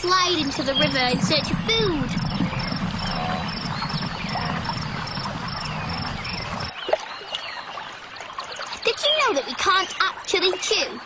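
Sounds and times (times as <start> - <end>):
low rumble: 0.0 - 6.7
animal and bird calls: 0.2 - 11.0.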